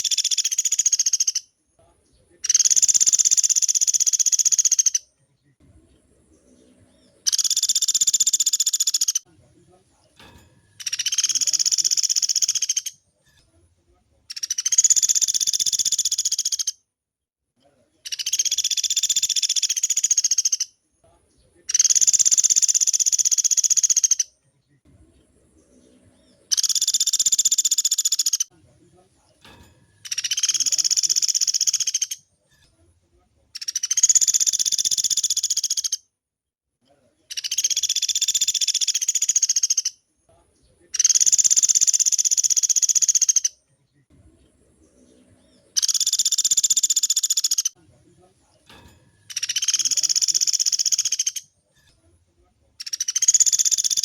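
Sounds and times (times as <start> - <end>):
woodpecker rattling trills: 0.0 - 1.5, 2.4 - 5.1, 6.0 - 9.2, 10.6 - 13.0, 14.3 - 16.8, 18.1 - 20.7, 21.7 - 24.3, 25.2 - 28.5, 29.8 - 32.3, 33.6 - 36.0, 37.3 - 40.0, 41.0 - 43.6, 44.5 - 47.8, 49.1 - 51.6, 52.8 - 54.0.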